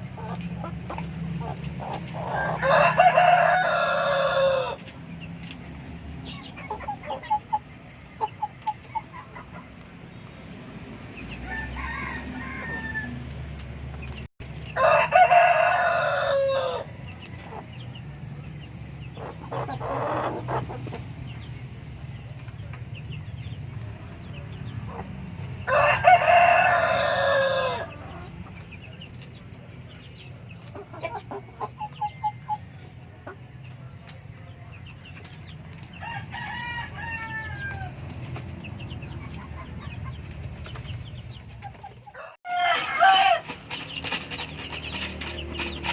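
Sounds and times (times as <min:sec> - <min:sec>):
chickens clucking: 0:00.0 - 0:45.9
rooster crowing: 0:02.4 - 0:04.8, 0:11.4 - 0:13.2, 0:14.8 - 0:16.9, 0:25.7 - 0:28.0, 0:36.0 - 0:37.9, 0:42.1 - 0:43.5.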